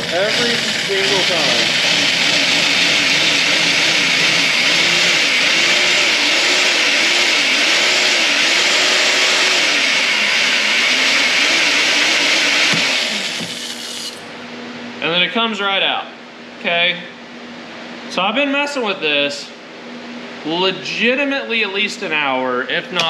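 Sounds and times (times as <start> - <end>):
power drill boring into metal: 0.0 - 14.2.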